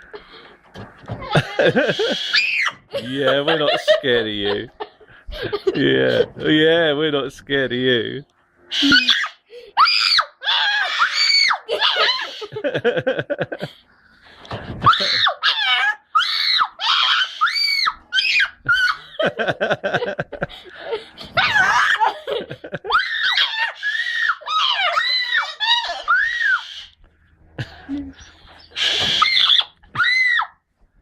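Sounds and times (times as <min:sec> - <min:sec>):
laughter: 0:01.2 - 0:02.3, 0:02.9 - 0:06.4, 0:11.7 - 0:13.8, 0:18.6 - 0:21.0, 0:22.0 - 0:23.0
parrot screeching: 0:01.3 - 0:02.8, 0:08.7 - 0:12.5, 0:14.9 - 0:19.1, 0:21.4 - 0:22.1, 0:22.9 - 0:27.0, 0:28.2 - 0:30.6
boy screaming: 0:08.8 - 0:12.5, 0:14.8 - 0:19.0, 0:21.4 - 0:22.2, 0:22.9 - 0:26.9, 0:28.9 - 0:30.6.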